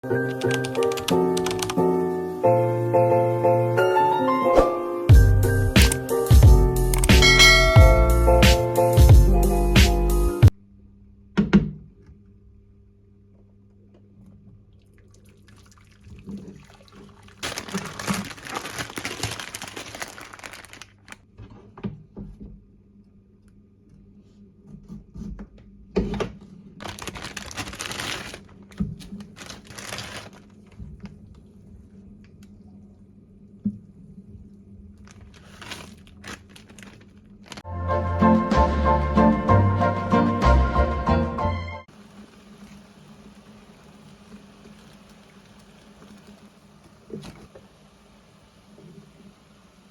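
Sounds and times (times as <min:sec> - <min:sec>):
liquid pouring: 0:14.8 - 0:20.9, 0:41.9 - 0:47.6.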